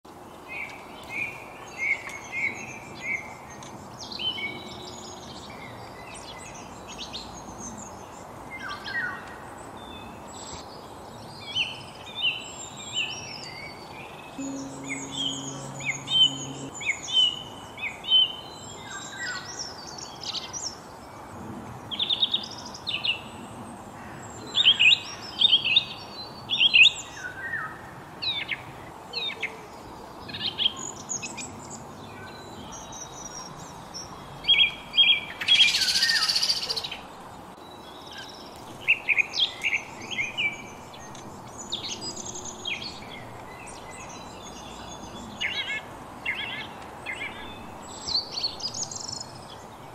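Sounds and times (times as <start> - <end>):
background hiss: 0.1 - 21.2
songbirds chirping and trilling: 0.1 - 49.9.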